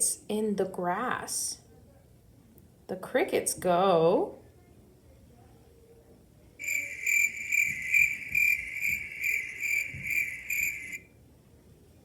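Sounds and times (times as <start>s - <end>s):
crickets chirping: 6.6s - 11.0s.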